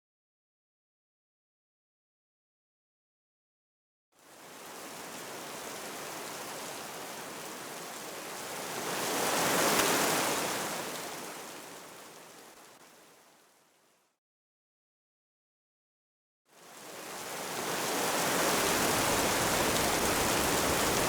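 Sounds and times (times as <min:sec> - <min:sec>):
falling rain hiss: 0:16.7 - 0:21.0.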